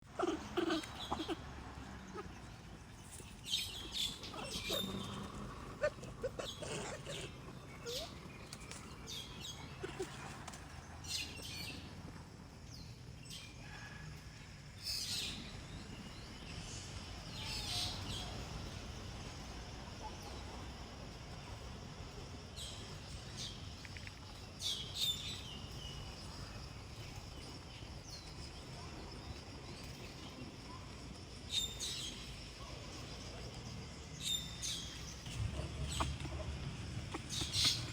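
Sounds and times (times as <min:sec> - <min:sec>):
low outdoor background: 0:00.0 - 0:37.9
animal chirps and squeaks: 0:03.4 - 0:08.2, 0:34.3 - 0:37.9.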